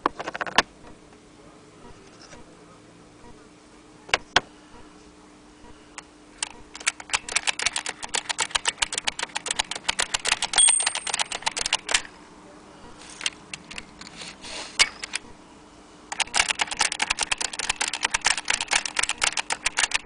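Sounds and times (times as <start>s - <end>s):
typewriter keystrokes: 6.8s - 12.0s, 16.1s - 20.0s.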